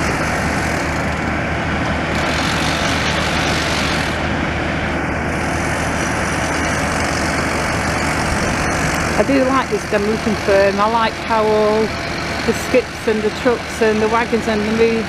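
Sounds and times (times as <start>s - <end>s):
diesel lorry engine idling: 0.0s - 15.0s.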